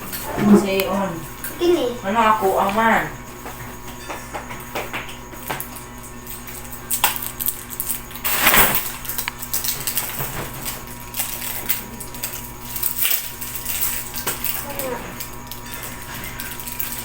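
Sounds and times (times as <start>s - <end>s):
small objects clicking and knocking: 6.4s - 17.0s.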